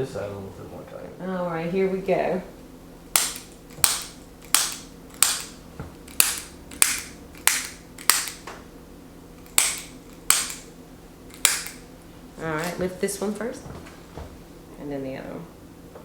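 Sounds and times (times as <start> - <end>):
spring-loaded instrument clicks: 3.2 - 8.4, 9.4 - 10.7, 11.3 - 11.8.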